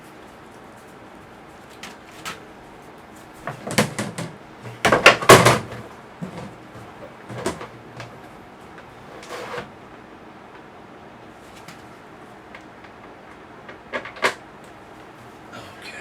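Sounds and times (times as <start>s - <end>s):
hard plastic parts knocking: 3.5s - 8.1s.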